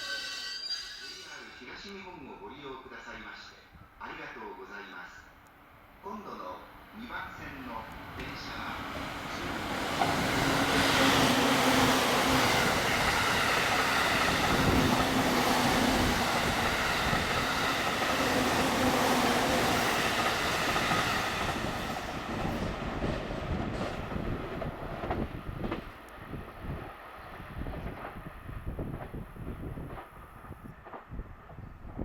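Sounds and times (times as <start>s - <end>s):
electric train passing: 0.0s - 1.9s, 5.6s - 31.2s
train wheel clacks: 9.3s - 22.6s.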